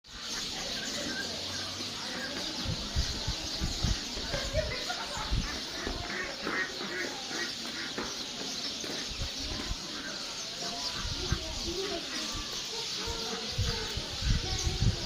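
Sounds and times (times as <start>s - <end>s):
small birds twittering: 0.1s - 15.0s.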